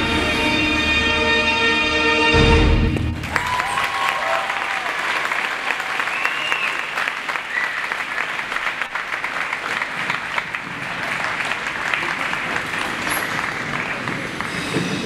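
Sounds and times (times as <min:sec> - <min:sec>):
audience applauding: 0:03.0 - 0:15.0.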